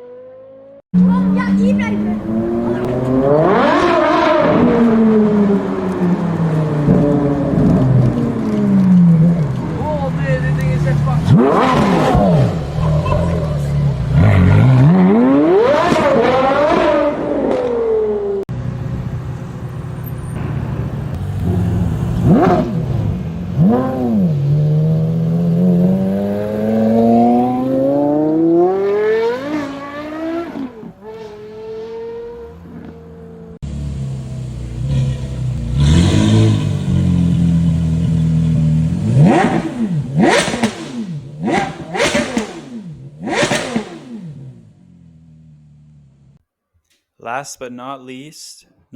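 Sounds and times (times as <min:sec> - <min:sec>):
car engine revving hard: 0:01.0 - 0:05.7, 0:10.9 - 0:13.4, 0:14.1 - 0:18.2, 0:21.4 - 0:32.9, 0:34.7 - 0:44.6.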